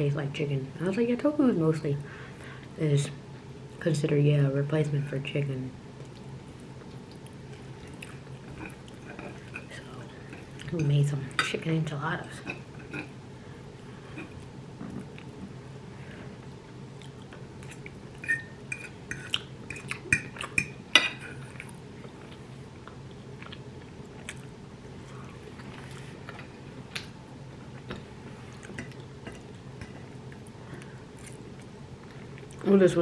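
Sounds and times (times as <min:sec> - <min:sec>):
chewing: 0:06.0 - 0:10.8, 0:17.0 - 0:20.7, 0:21.3 - 0:27.1, 0:27.7 - 0:32.6.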